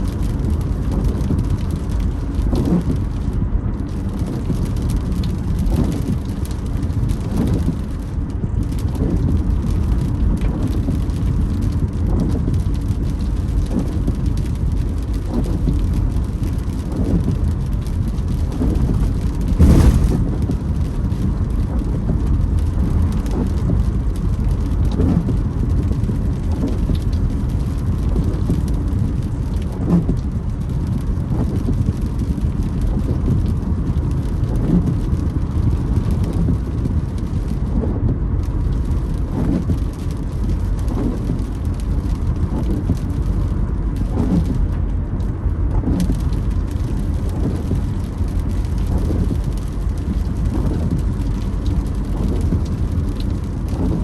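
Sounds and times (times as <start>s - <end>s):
road and rain noise: 0.0s - 54.0s
windscreen wipers creaking: 0.0s - 54.0s.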